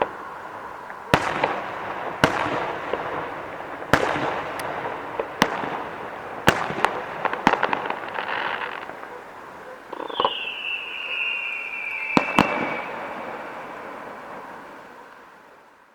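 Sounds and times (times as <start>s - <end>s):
firework bangs: 0.0s - 15.2s
crackling pops: 0.8s - 13.0s
falling whistle: 9.9s - 14.8s.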